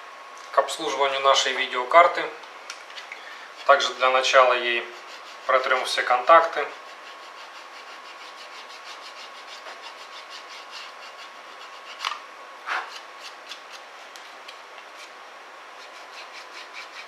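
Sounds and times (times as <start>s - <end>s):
eraser rubbing on metal contacts: 3.6s - 12.1s, 15.8s - 17.0s.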